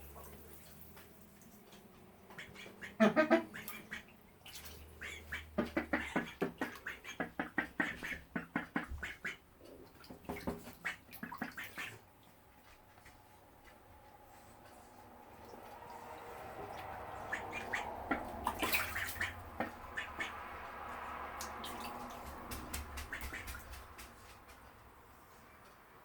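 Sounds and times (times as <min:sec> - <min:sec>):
ducks quacking: 0:02.3 - 0:04.2, 0:04.8 - 0:09.4, 0:10.6 - 0:12.1, 0:15.8 - 0:24.3.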